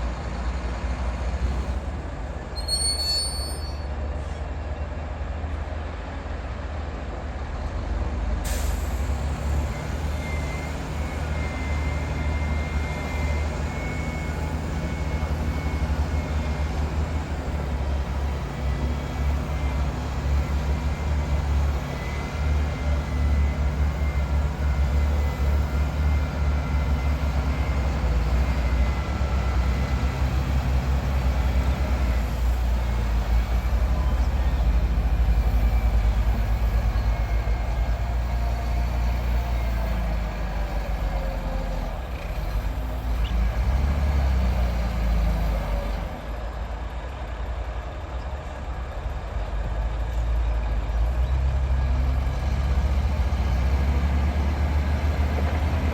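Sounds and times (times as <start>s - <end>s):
heavy diesel engine droning: 0.0s - 55.9s.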